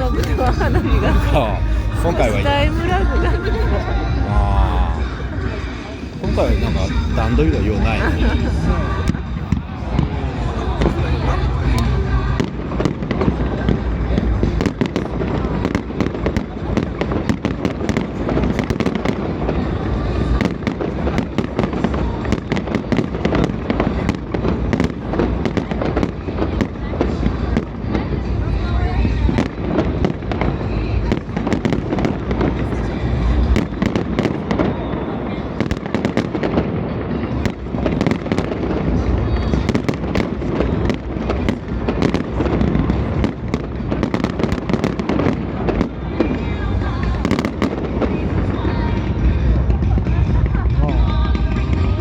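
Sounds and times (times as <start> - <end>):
low rumble of bursts: 0.0 - 15.6, 47.9 - 52.0
low booming: 0.0 - 22.4, 37.3 - 52.0
fireworks bangs and crackles: 0.0 - 52.0.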